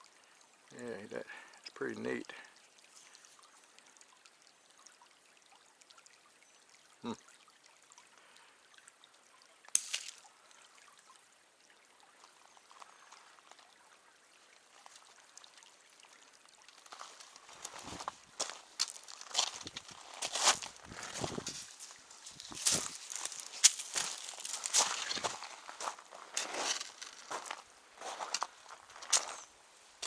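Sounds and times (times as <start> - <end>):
creek water trickling: 0.0 - 30.0
scuffing noises: 17.0 - 29.4.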